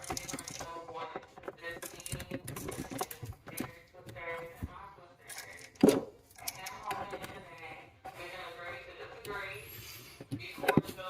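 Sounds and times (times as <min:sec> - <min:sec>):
sharp clicks and knocks: 0:00.0 - 0:07.7
person talking: 0:00.0 - 0:11.0.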